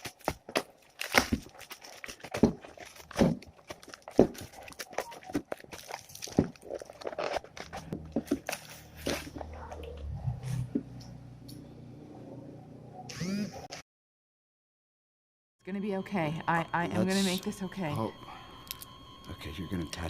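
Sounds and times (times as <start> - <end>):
plastic and cardboard crinkling: 0.0 - 9.8.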